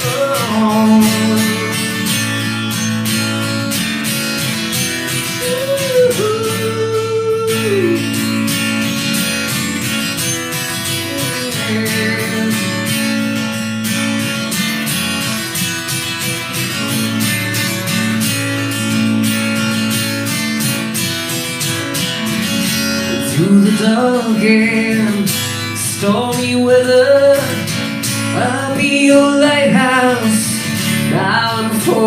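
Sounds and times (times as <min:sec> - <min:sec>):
bending guitar note: 0:00.0 - 0:14.6, 0:16.8 - 0:24.2
acoustic guitar strumming: 0:00.0 - 0:32.0.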